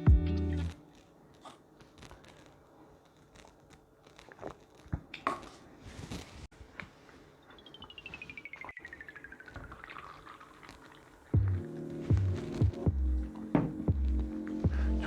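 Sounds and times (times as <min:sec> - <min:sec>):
background music: 0:00.0 - 0:00.8, 0:11.4 - 0:15.0
beer pouring from bottle: 0:07.8 - 0:11.4.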